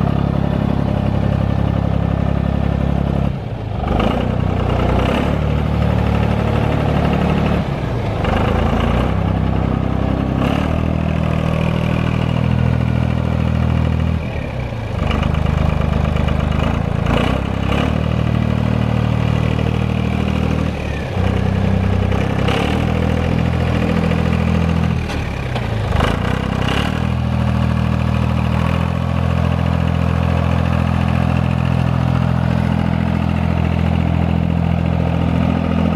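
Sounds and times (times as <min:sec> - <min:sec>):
tractor diesel engine running: 0:00.0 - 0:35.9.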